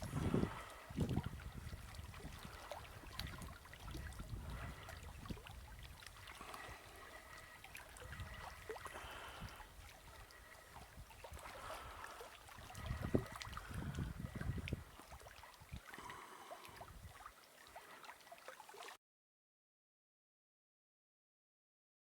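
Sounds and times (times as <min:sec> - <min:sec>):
wind rumbling on microphone: 0:00.0 - 0:15.9, 0:16.8 - 0:17.2
lake waves lapping on shore: 0:00.0 - 0:19.0.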